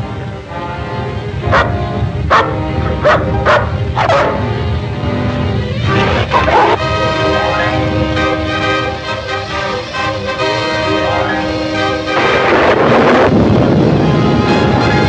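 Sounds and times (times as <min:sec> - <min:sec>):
film music: 0:00.0 - 0:15.0
dog barking: 0:01.5 - 0:04.4, 0:06.3 - 0:06.8.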